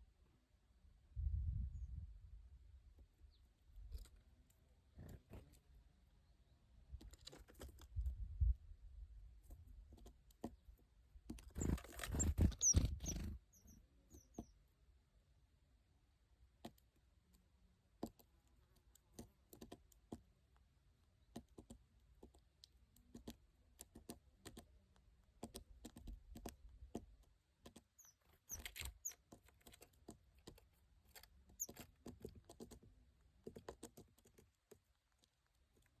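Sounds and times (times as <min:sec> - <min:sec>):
bird pecking and tapping: 0:07.0 - 0:08.1, 0:09.5 - 0:13.4, 0:16.6 - 0:16.9, 0:18.0 - 0:20.3, 0:21.2 - 0:36.0
short high bird chirps: 0:11.6 - 0:14.5, 0:28.0 - 0:29.2.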